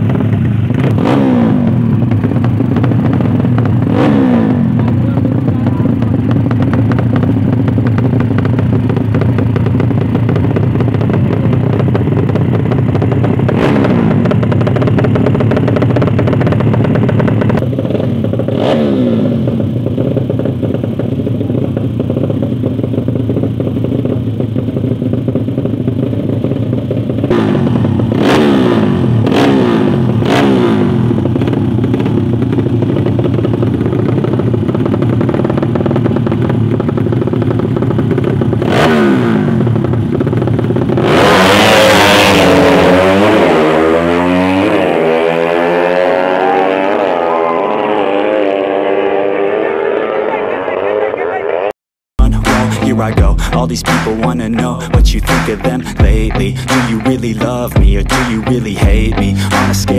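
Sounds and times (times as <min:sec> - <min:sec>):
motorcycle engines revving: 0:00.0 - 0:59.9.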